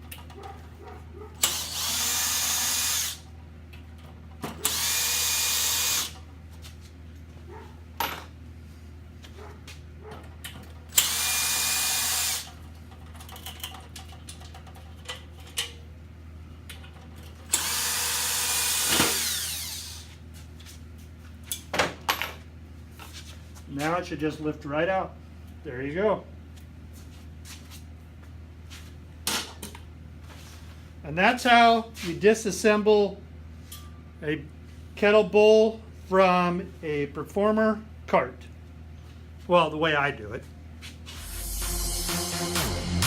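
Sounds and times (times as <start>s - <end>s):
power driver removing bolts: 1.4s - 3.2s, 4.4s - 6.2s, 10.9s - 12.5s, 17.4s - 20.0s.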